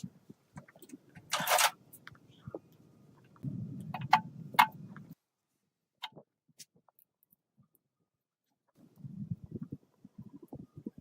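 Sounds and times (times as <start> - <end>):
low hum: 0.0 - 5.2.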